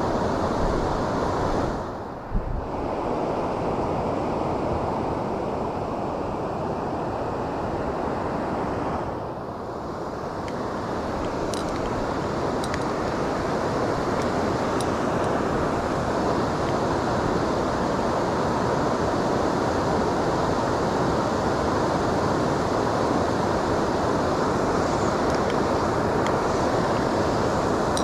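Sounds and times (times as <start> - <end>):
river water rushing: 9.8 - 28.0.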